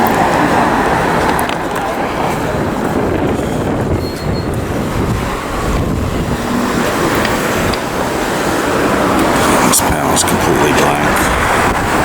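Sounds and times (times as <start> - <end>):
passing car traffic: 0.0 - 12.0.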